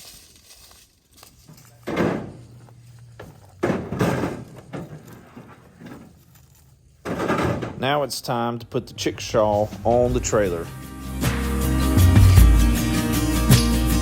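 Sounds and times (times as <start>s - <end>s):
loud bangs with clatter: 1.8s - 6.3s, 7.0s - 8.2s.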